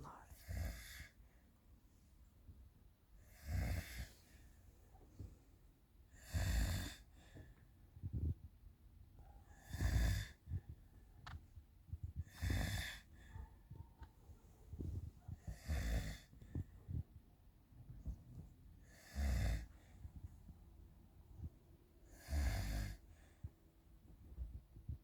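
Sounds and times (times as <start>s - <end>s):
loud rasping snoring: 3.4s - 4.1s, 6.2s - 7.0s, 9.6s - 10.4s, 12.3s - 13.1s, 15.5s - 16.3s, 18.9s - 19.7s, 22.2s - 23.0s.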